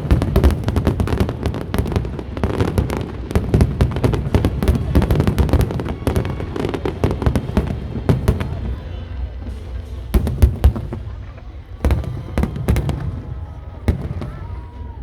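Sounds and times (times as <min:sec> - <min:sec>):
fireworks bangs and crackles: 0:00.0 - 0:15.0.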